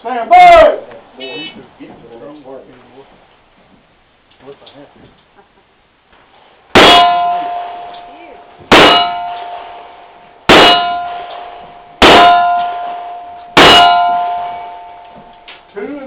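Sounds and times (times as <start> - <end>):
gunshots: 6.7 - 7.9, 8.7 - 9.9, 10.5 - 14.7
steel target ringing: 6.8 - 15.5.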